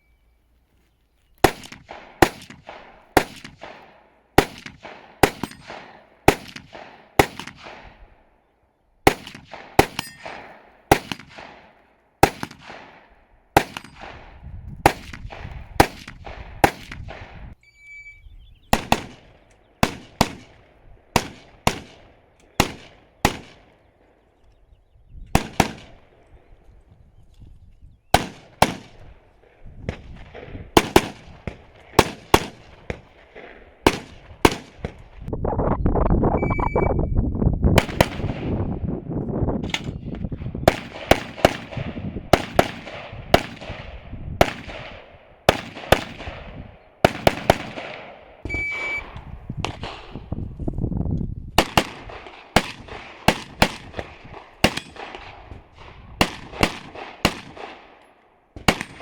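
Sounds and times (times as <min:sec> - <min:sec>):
gunshots fired close by: 0:01.4 - 0:08.0, 0:09.0 - 0:17.5, 0:18.7 - 0:23.7, 0:25.3 - 0:26.1, 0:28.1 - 0:29.2, 0:29.8 - 0:35.2, 0:37.8 - 0:38.7, 0:39.6 - 0:50.3, 0:51.6 - 0:58.0, 0:58.6 - 0:59.0
short high beeps: 0:17.6 - 0:18.3, 0:36.4 - 0:37.2, 0:48.5 - 0:49.1.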